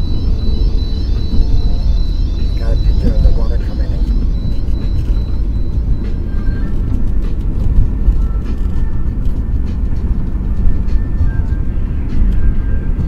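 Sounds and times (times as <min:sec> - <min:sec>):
car interior rumble: 0:00.0 - 0:13.0.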